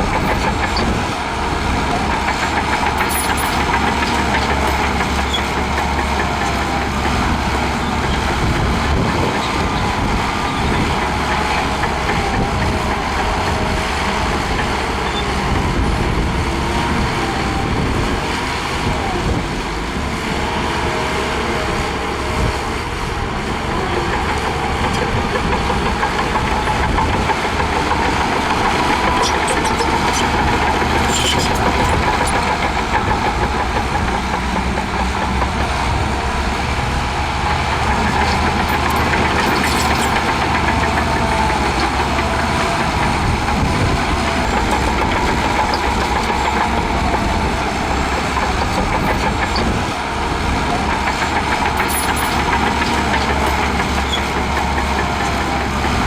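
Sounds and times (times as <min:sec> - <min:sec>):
bulldozer diesel engine running: 0:00.0 - 0:56.0
light clicks and clanks: 0:37.8 - 0:40.7.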